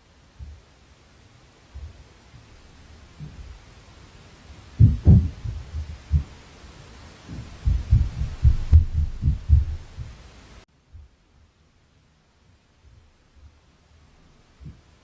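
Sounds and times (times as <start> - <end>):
background hiss: 0.0 - 15.0
dull thuds through ceiling: 4.7 - 6.5, 7.2 - 11.2.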